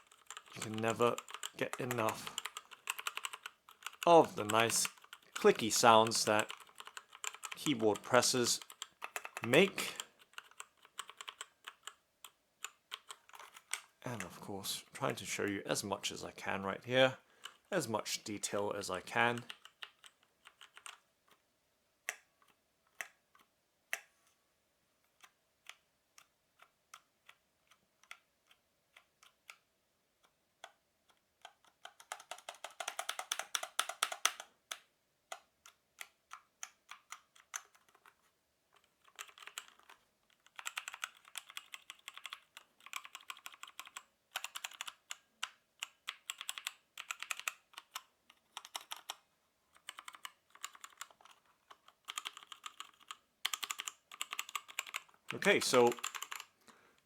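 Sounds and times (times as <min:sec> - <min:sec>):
mechanical keyboard keys pressed: 0:00.0 - 0:08.0, 0:08.6 - 0:09.6, 0:10.2 - 0:12.0, 0:31.4 - 0:34.5, 0:39.0 - 0:45.2, 0:45.8 - 0:49.2, 0:49.8 - 0:55.2, 0:55.9 - 0:56.5.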